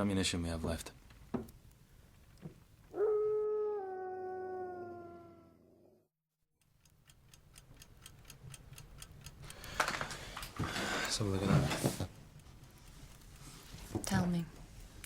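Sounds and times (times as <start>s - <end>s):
werewolf howl: 2.9s - 6.0s.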